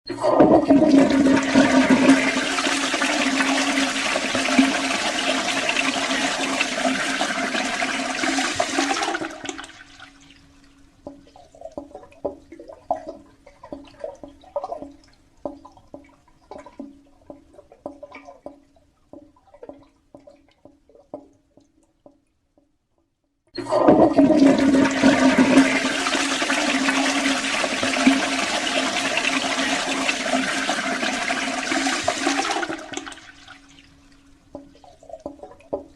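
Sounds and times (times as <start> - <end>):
toilet flushing: 0.1 - 10.2, 23.6 - 33.8
water gurgles and drips: 0.1 - 22.7, 23.6 - 35.9
faint steady hum: 0.1 - 35.9.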